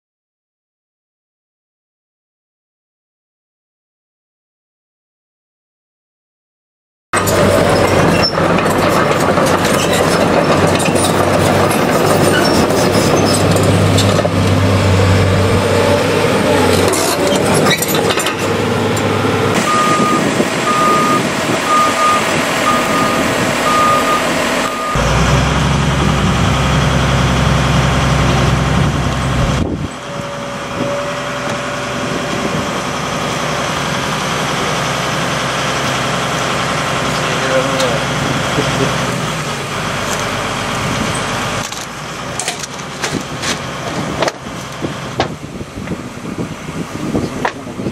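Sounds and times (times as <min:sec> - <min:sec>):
diesel engine running: 0:07.2 - 0:47.9
back-up alarm beeping: 0:19.6 - 0:25.1.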